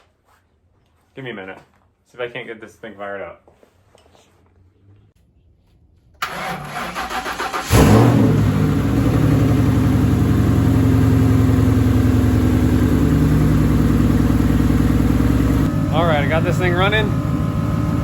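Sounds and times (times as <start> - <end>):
car engine starting and idling: 6.2 - 18.0.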